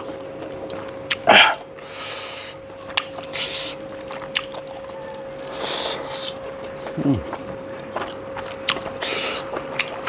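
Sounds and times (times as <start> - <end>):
faint steady hum: 0.0 - 10.0
breathing: 1.8 - 2.6
person chewing: 2.8 - 10.0
mouth clicks and smacks: 6.9 - 8.1
throaty burst: 7.0 - 7.5.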